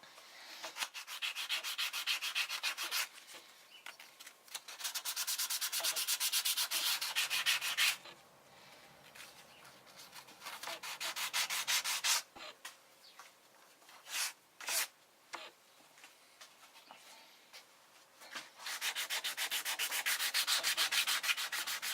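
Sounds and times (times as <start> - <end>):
hand sanding wood: 0.7 - 3.1, 4.7 - 8.0, 10.1 - 12.3, 18.6 - 21.9.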